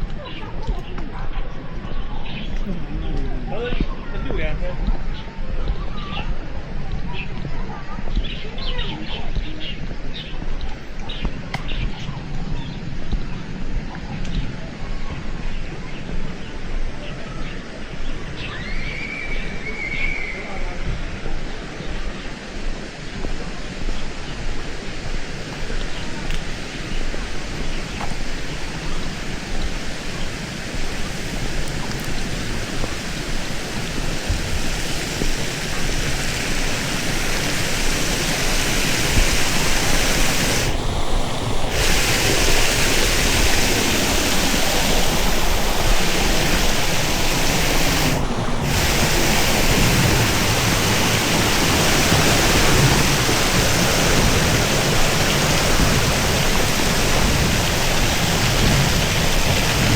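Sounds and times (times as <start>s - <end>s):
rushing water: 0.0s - 59.9s.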